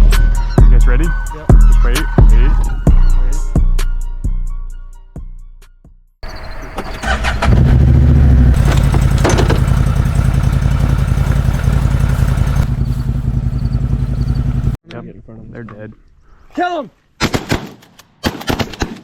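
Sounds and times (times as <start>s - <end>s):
vehicle engine running: 6.2s - 14.8s.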